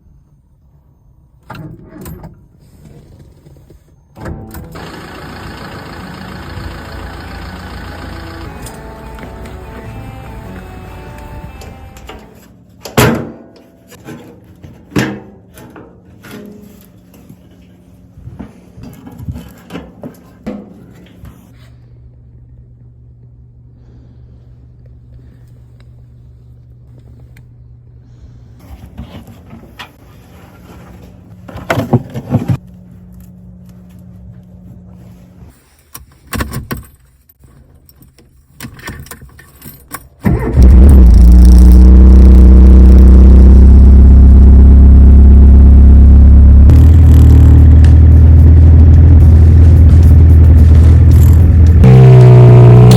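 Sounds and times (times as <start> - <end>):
car engine starting and running: 4.2 - 12.4, 40.2 - 52.9
faint low hum: 40.3 - 52.9.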